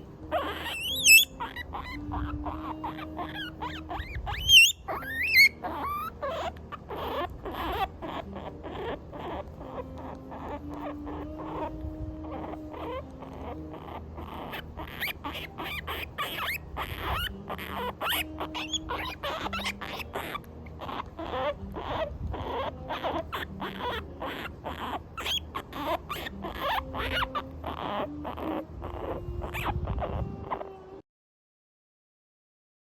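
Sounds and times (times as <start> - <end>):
guinea pig squeaking: 0.0 - 30.8
soft background music: 0.0 - 31.0.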